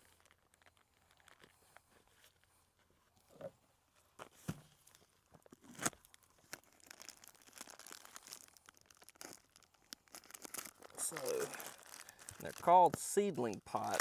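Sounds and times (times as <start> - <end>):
paper tearing and crinkling: 5.6 - 14.0.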